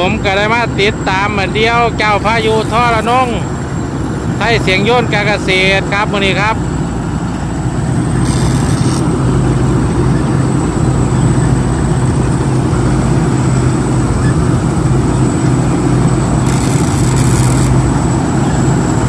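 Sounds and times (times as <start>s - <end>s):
combine harvester engine hum: 0.0s - 19.0s
mechanical clatter: 8.2s - 9.1s, 16.4s - 18.1s.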